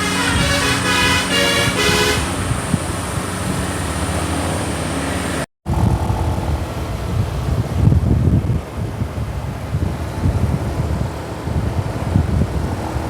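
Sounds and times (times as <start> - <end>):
musical air horn tune: 0.0 - 2.6
bus engine rumble: 0.0 - 13.0
road traffic: 0.0 - 13.0.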